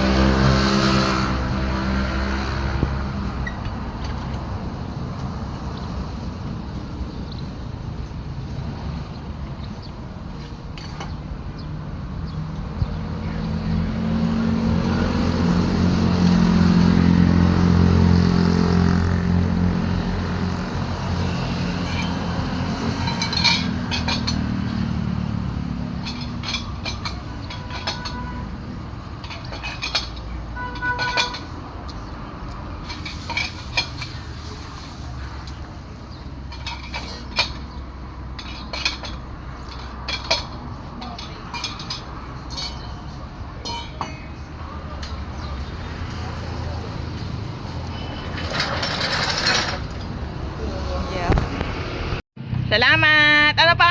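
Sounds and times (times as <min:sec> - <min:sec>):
vehicle engine passing: 0:00.0 - 0:06.4, 0:12.3 - 0:29.5.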